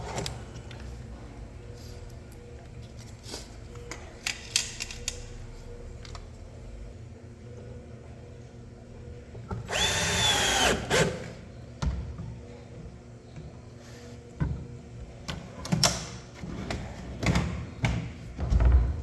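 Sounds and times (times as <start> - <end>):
cordless drill motor whine: 9.7 - 11.3.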